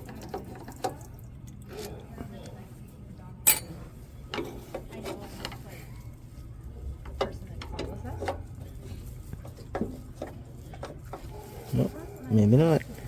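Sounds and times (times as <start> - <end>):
metallic clicks and knocks of tools: 3.5 - 3.7.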